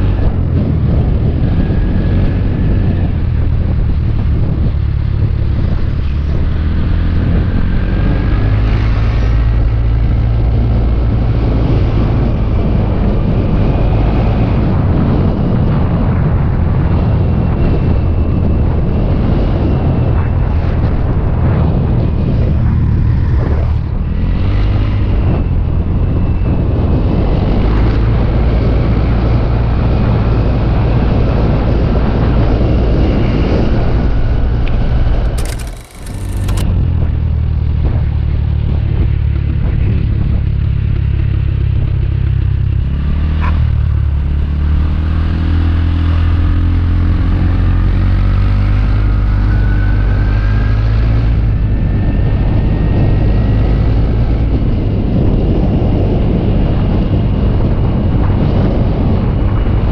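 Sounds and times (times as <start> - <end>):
road and air noise: 0.0 - 59.9
motor scooter engine droning: 33.2 - 37.7.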